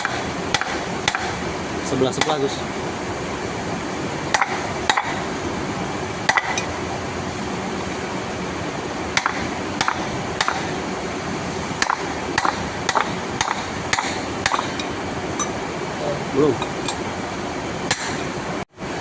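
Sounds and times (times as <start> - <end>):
steady background hum: 0.0 - 19.0
sharp hammer taps: 11.8 - 15.5.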